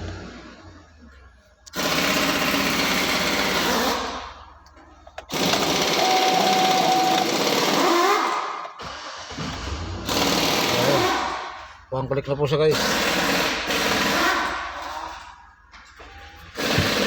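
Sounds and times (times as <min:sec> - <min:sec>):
car engine starting: 0:00.0 - 0:11.9, 0:16.3 - 0:17.0.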